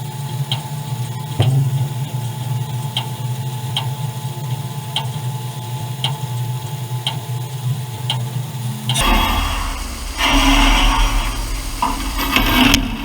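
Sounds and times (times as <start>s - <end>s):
low machine drone: 1.3s - 3.8s, 8.6s - 13.0s.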